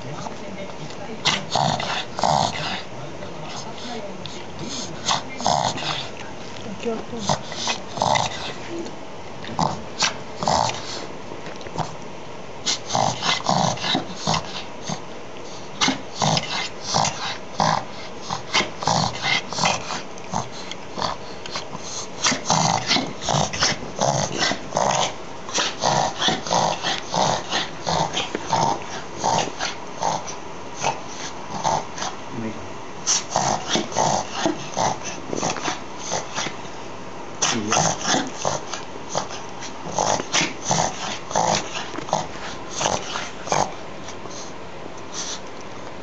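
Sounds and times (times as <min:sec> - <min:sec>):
dog reverse sneezing: 0:33.0 - 0:34.5, 0:37.4 - 0:38.3.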